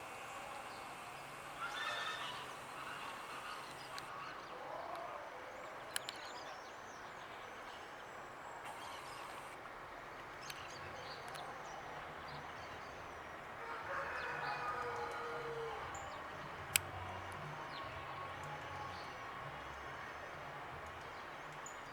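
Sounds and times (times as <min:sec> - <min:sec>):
short sharp clicks: 0:00.0 - 0:04.2
faint bird calls: 0:00.0 - 0:07.8, 0:08.6 - 0:09.6.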